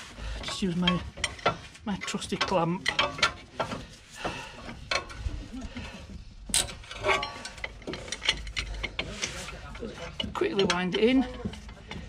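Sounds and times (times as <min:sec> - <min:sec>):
metal clamp clicks and rattles: 0:00.4 - 0:03.8, 0:06.5 - 0:12.0.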